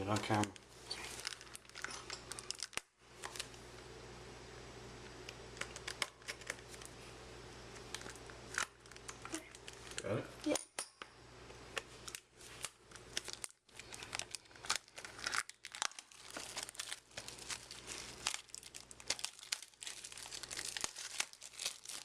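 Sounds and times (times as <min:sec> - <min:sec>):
packaging crinkling and tearing: 0:00.0 - 0:03.6, 0:07.7 - 0:10.1, 0:11.8 - 0:22.0.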